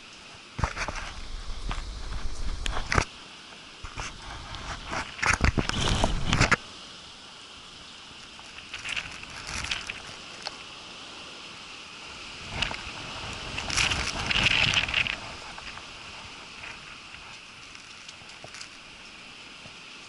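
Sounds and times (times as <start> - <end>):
rain: 0.0 - 20.0
wind on microphone: 0.6 - 3.1, 3.8 - 6.6, 12.1 - 18.6.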